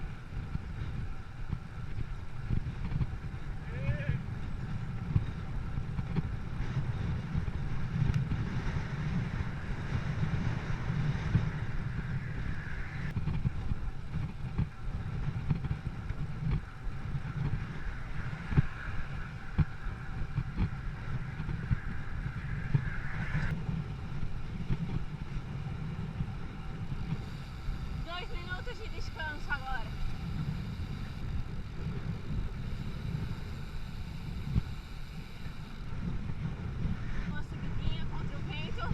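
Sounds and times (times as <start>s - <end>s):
wind buffeting microphone: 0.0s - 38.9s
steady high hiss: 27.0s - 36.2s.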